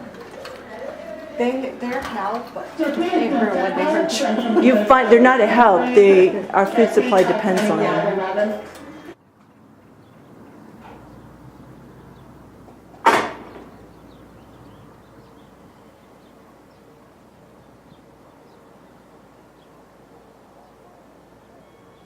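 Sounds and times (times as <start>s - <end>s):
low steady hum: 9.8s - 19.2s
sharp bang: 12.5s - 14.1s.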